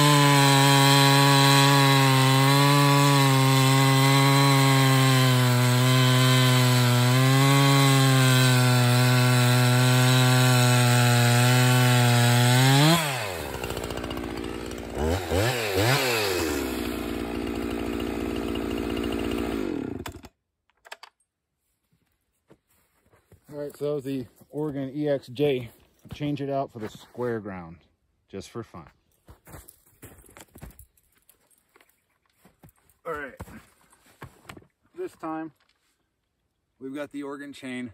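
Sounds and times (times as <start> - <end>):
chainsaw cutting log: 0.0 - 20.4
chainsaw revving and idling: 0.0 - 20.4.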